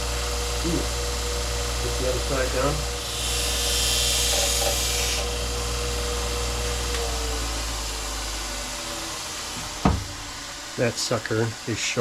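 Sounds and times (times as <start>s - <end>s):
belt grinder grinding steel: 0.0s - 8.4s
grinder motor humming: 0.0s - 12.0s.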